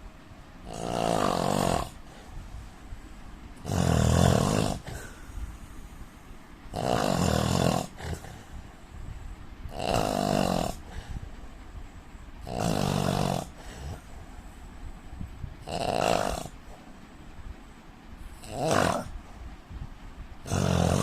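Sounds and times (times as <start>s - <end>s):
man snoring: 0.6s - 2.2s, 3.6s - 5.3s, 6.7s - 8.5s, 9.7s - 11.2s, 12.4s - 14.1s, 15.6s - 16.6s, 18.3s - 19.2s, 20.4s - 21.0s
quiet breathing: 1.5s - 7.2s, 7.8s - 15.6s.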